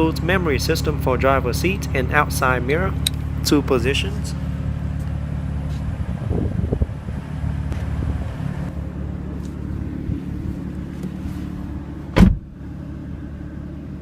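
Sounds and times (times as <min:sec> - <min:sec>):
car engine idling: 0:00.0 - 0:14.0
sharp thump: 0:12.2 - 0:12.5.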